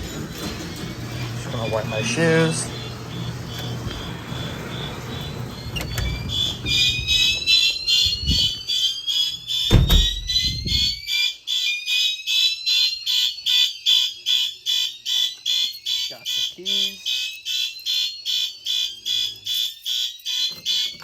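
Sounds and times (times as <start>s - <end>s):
fire alarm horns: 0.0s - 21.0s
door thump: 3.6s - 8.6s, 9.6s - 11.0s.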